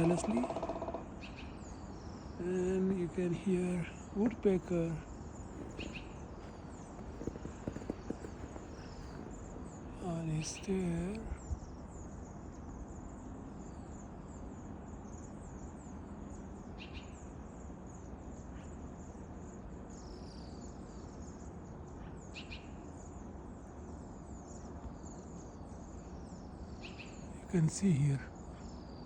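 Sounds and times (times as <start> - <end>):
low background rumble: 0.0 - 12.6
songbirds chirping: 0.0 - 29.0.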